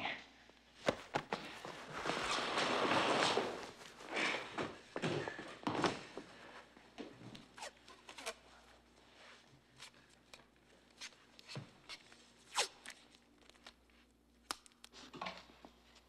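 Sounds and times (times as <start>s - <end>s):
rustles of movement: 0.8s - 5.0s.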